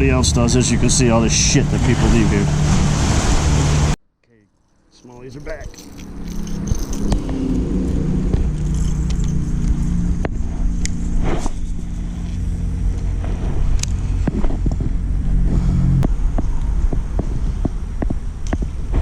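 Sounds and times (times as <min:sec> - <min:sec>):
motor engine running: 0:04.8 - 0:17.6.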